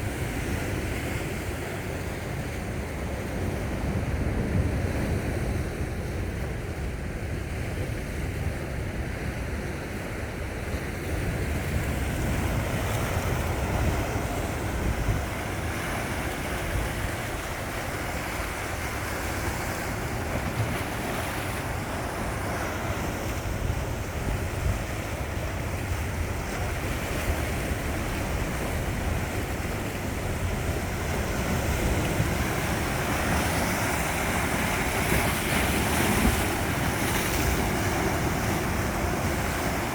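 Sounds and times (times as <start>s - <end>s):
sea waves washing on shore: 0.0s - 39.9s
wind buffeting microphone: 10.8s - 39.9s.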